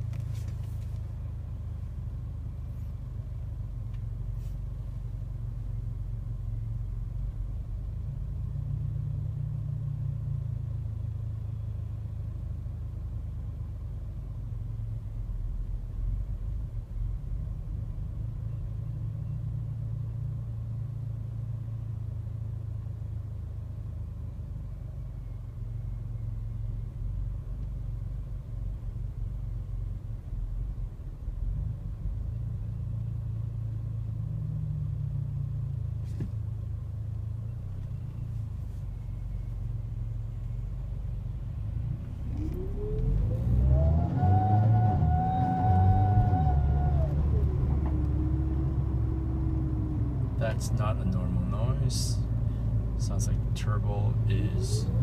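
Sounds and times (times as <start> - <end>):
engine low rumble: 0.0 - 55.0
engine revving with wailing whine: 24.7 - 36.3, 36.9 - 55.0.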